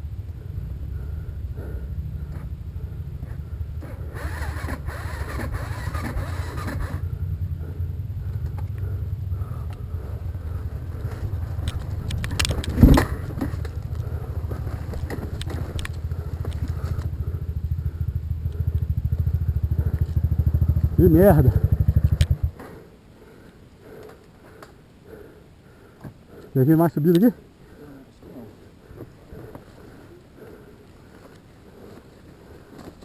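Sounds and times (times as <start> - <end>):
motorcycle engine idling: 0.0 - 22.6.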